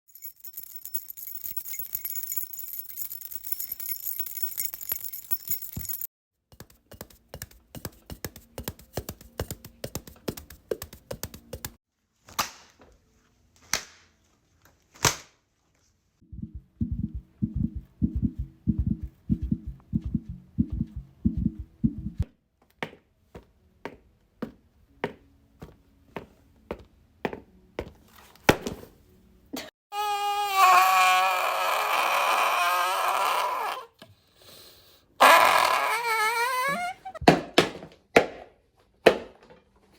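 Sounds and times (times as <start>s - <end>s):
jingling rattle: 0.1s - 6.1s
low even thuds: 16.3s - 22.2s.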